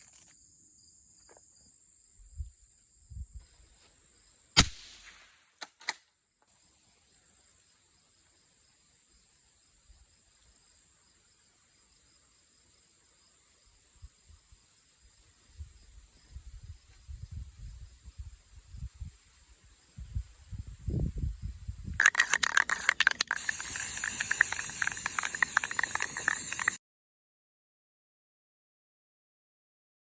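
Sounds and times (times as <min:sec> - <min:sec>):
crickets chirping: 0:00.0 - 0:04.5, 0:06.5 - 0:26.8
aerosol spray can hissing: 0:22.0 - 0:26.8.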